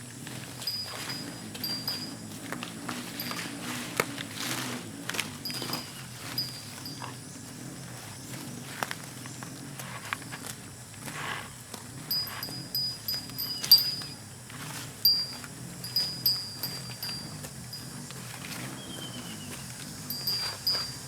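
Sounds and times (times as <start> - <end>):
low wavering hum: 0.0 - 21.0
bird chirping: 18.4 - 21.0.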